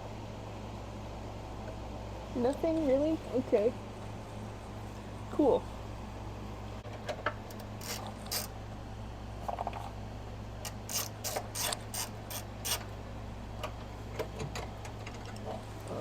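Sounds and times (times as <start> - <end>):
steady low hum: 0.0 - 16.0
ratchet wrench clicking: 7.5 - 8.5, 10.6 - 12.9.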